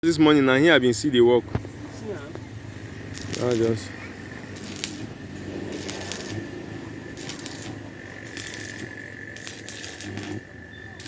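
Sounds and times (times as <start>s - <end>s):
steady high hum: 1.8s - 11.0s
metallic clinking and crackling: 3.1s - 11.0s.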